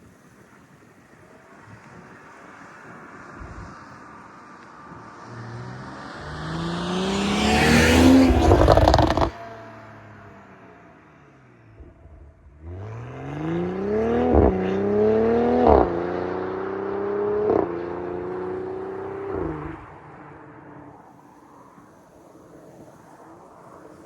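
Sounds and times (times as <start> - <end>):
car engine accelerating through gears: 5.0 - 9.7, 11.8 - 20.1
exhaust cracks: 6.2 - 9.4.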